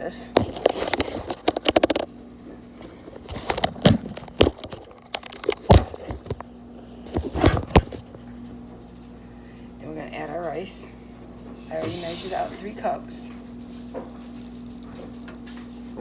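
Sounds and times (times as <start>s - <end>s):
steady low hum: 0.0s - 15.7s
kitchen items knocking and clicking: 0.3s - 2.1s, 3.3s - 6.4s, 11.6s - 13.1s.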